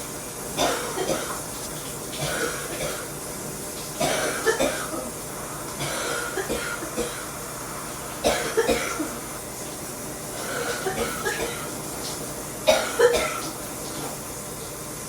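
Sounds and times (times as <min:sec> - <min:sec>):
person coughing: 0:00.6 - 0:01.4, 0:02.2 - 0:03.1, 0:04.0 - 0:05.1, 0:05.8 - 0:07.3, 0:08.2 - 0:09.2, 0:10.4 - 0:11.7, 0:12.7 - 0:13.5.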